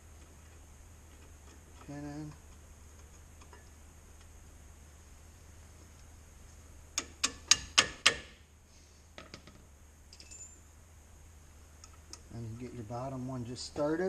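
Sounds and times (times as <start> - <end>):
sharp metal taps: 7.0 - 8.4.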